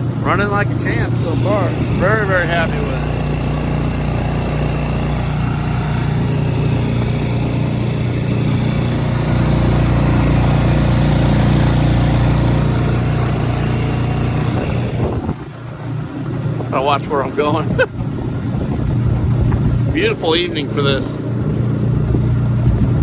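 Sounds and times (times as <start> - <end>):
outboard motor running: 0.0 - 23.0.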